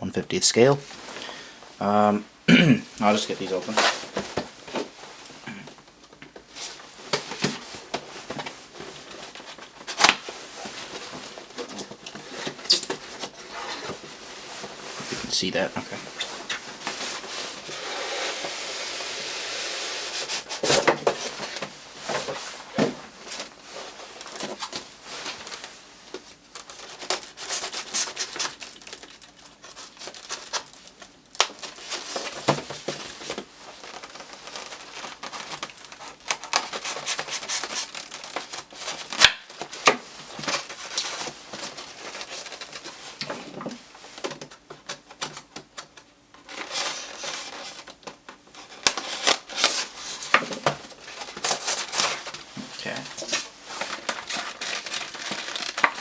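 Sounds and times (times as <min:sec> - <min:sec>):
packaging rustling and crinkling: 0:03.0 - 0:56.0
packaging rubbing and tearing: 0:26.6 - 0:29.2, 0:33.7 - 0:39.9, 0:50.9 - 0:56.0.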